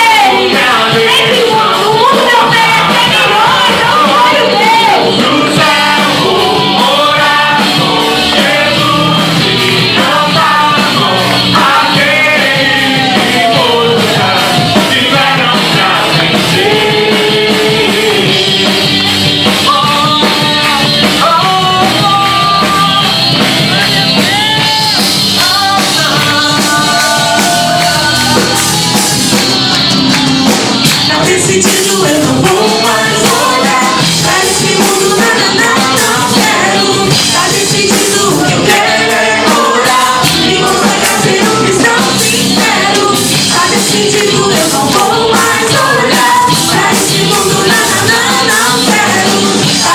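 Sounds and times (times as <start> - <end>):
drum and cymbal hits: 0.0 - 49.9
person singing: 0.0 - 49.9
worship band playing: 0.0 - 49.9.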